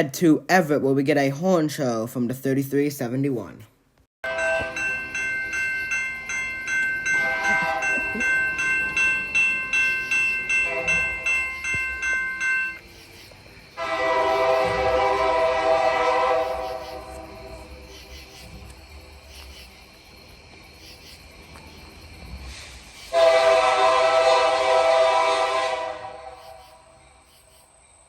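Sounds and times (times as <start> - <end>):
pulsing high ringing tone: 4.2 - 18.1
locomotive air horn blasts: 13.8 - 17.6, 23.1 - 26.6.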